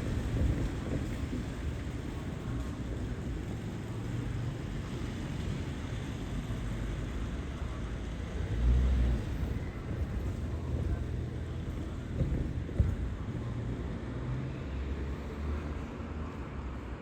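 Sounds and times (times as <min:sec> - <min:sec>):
low vehicle rumble: 0:00.0 - 0:17.0
low bump: 0:09.2 - 0:13.4.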